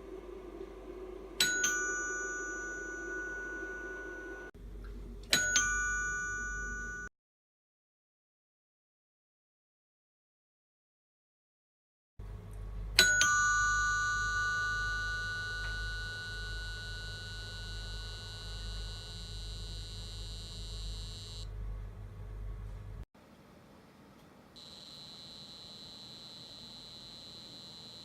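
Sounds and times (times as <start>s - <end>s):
high-pitched electronic whine: 0.0s - 4.5s, 15.1s - 21.5s, 24.6s - 28.0s
doorbell chime: 1.4s - 4.5s, 5.4s - 7.1s, 13.0s - 19.7s.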